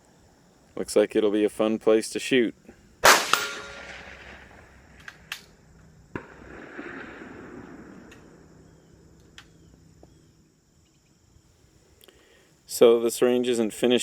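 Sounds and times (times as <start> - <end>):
rifle shot echo: 3.0 - 9.6.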